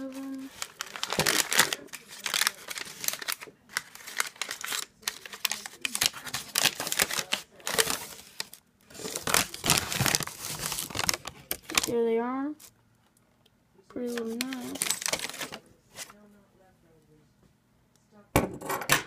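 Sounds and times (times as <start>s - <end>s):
packaging wrap crinkling and tearing: 0.0s - 12.7s, 14.0s - 16.1s.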